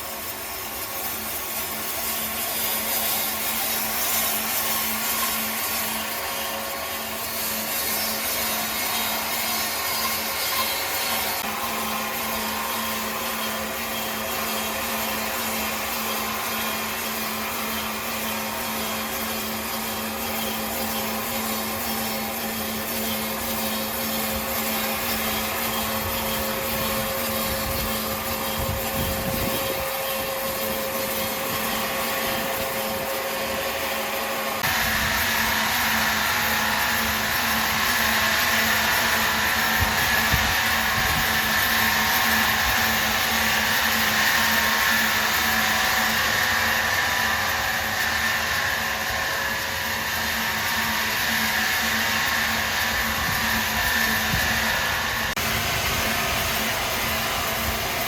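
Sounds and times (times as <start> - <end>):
sawing machine humming and whining: 0.0 - 58.0.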